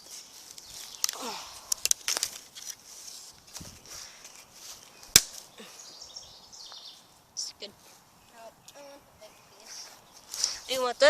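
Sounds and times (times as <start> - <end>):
brush rustling: 0.0 - 11.0
dry stick snapping: 0.5 - 2.8, 5.0 - 5.5.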